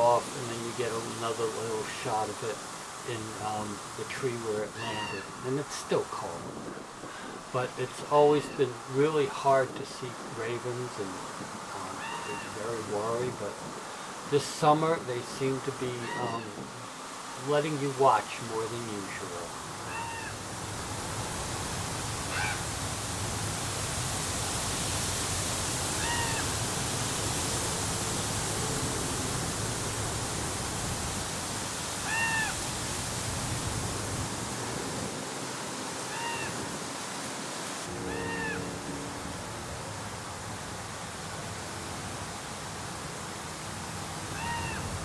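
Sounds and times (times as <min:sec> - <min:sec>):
raven calling: 0:00.0 - 0:18.4, 0:19.5 - 0:20.5, 0:22.1 - 0:22.7, 0:25.8 - 0:26.7, 0:32.0 - 0:32.6, 0:36.0 - 0:36.9, 0:37.8 - 0:39.3, 0:44.2 - 0:45.0
steady background hiss: 0:00.0 - 0:45.0.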